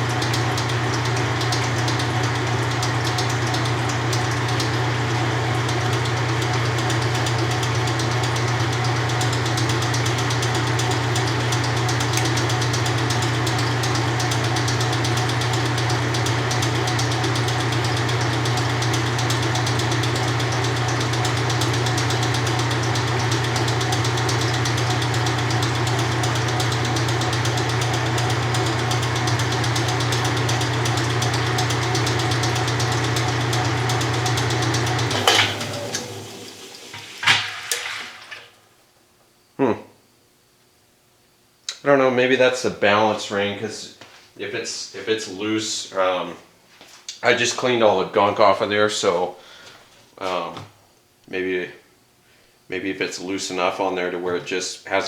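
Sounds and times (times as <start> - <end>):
washing machine motor humming: 0.0 - 39.0.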